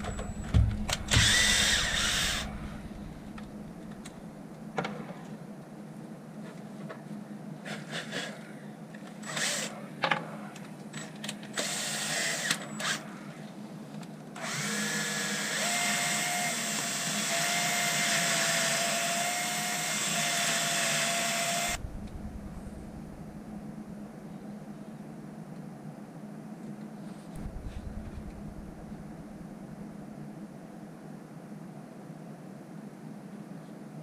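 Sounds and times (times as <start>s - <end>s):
power drill whining: 0.0s - 3.4s, 9.2s - 9.7s, 11.5s - 13.1s, 14.4s - 21.8s.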